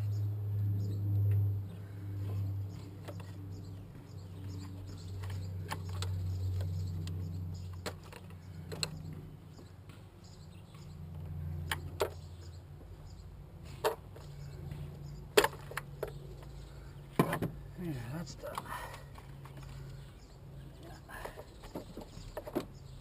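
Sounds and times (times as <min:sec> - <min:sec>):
tools and engine parts clicking: 0:04.4 - 0:09.6, 0:13.7 - 0:17.5, 0:18.3 - 0:20.1.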